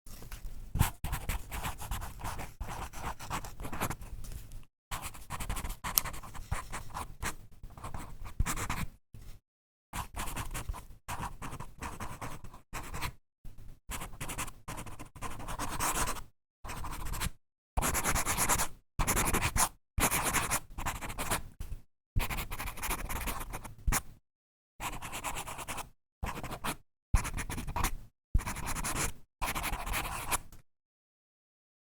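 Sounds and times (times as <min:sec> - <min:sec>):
pen scratching on paper: 0:00.8 - 0:04.0, 0:04.9 - 0:08.9, 0:10.0 - 0:13.2, 0:13.9 - 0:21.4, 0:22.2 - 0:24.0, 0:24.8 - 0:30.5.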